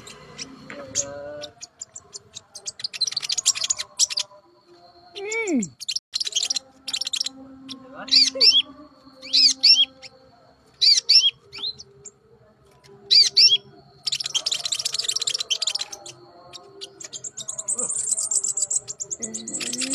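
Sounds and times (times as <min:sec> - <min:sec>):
bird chattering rattle: 0:00.0 - 0:04.3, 0:05.2 - 0:08.6, 0:12.8 - 0:19.9
high buzzy bird trill: 0:00.0 - 0:19.9
songbird singing: 0:00.0 - 0:19.9.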